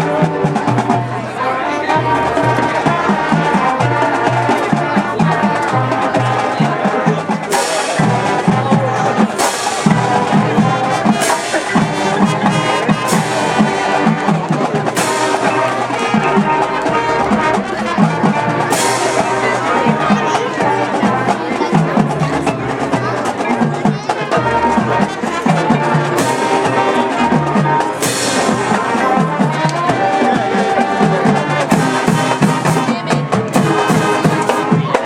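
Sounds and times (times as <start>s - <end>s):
brass melody: 0.0s - 35.0s
drumline: 0.0s - 35.0s
marching band playing: 0.0s - 35.0s
sharp percussion hits: 7.2s - 35.0s.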